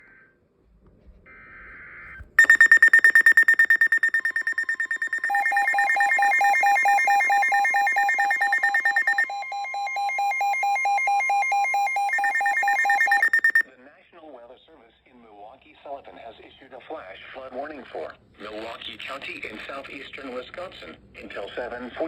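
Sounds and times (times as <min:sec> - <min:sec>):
lower pulsing beep: 0:02.4 - 0:13.6
rapidly pulsing high electronic beep: 0:02.4 - 0:13.6
steady electronic tone: 0:02.4 - 0:13.6.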